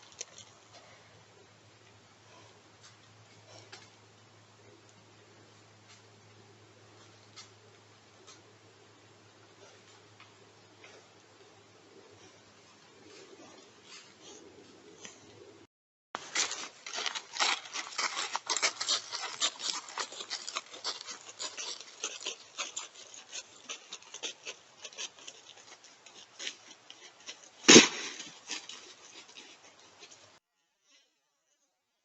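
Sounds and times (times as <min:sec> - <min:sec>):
crackling and rustling: 0:00.0 - 0:08.7, 0:16.2 - 0:30.4.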